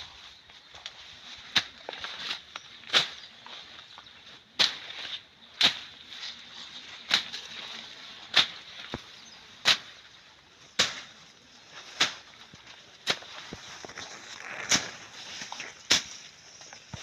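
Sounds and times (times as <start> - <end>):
blade cutting through weeds: 13.0 - 17.0.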